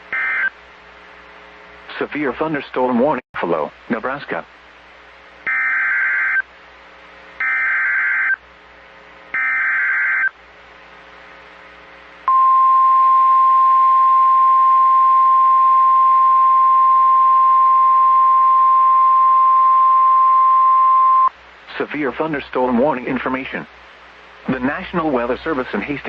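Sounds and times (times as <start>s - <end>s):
steady warning alarm tone: 0.1s - 0.5s, 5.5s - 6.4s, 7.4s - 8.4s, 9.4s - 10.3s.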